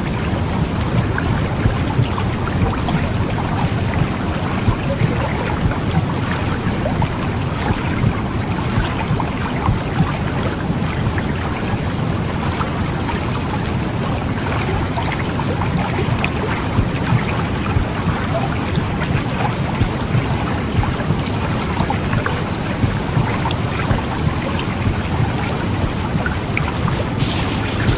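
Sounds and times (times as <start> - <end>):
faint crackles: 15.7 - 27.9
low rumbling whoosh: 26.9 - 27.9.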